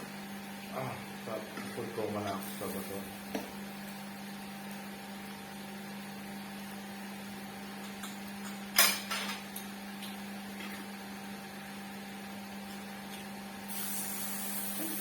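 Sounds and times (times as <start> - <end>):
low electric hum: 0.0 - 15.0
utensils clattering on tableware: 8.4 - 9.4.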